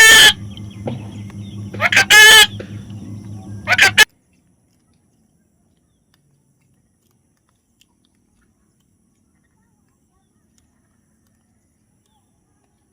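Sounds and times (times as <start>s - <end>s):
harsh bird calls: 0.0s - 4.1s
low steady hum: 0.0s - 4.1s.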